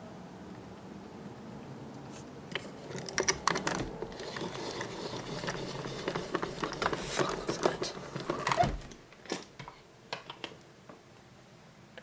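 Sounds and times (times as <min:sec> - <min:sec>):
faint steady rain hiss: 0:00.0 - 0:12.0
window being closed and handled: 0:02.5 - 0:09.8.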